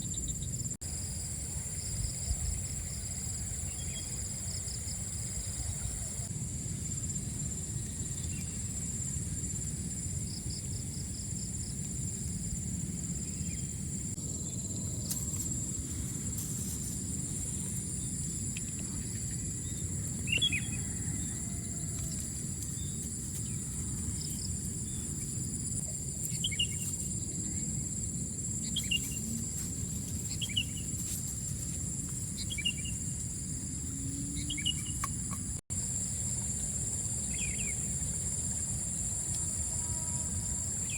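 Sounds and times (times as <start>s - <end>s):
insects trilling: 0.0s - 40.9s
bird chirps: 34.3s - 35.4s.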